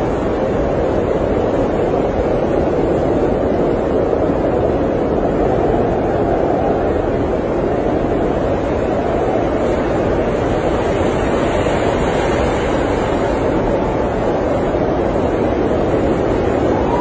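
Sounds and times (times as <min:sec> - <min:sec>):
blizzard wind rushing: 0:00.0 - 0:17.0.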